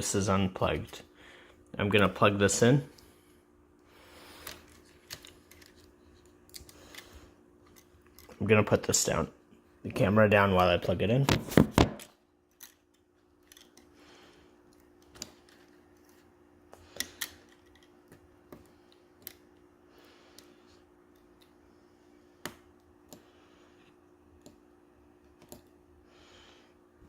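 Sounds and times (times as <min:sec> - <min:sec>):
faint steady hum: 0:00.0 - 0:27.0
small clicks from handling phone parts: 0:04.4 - 0:08.4, 0:12.0 - 0:13.9, 0:14.7 - 0:19.6.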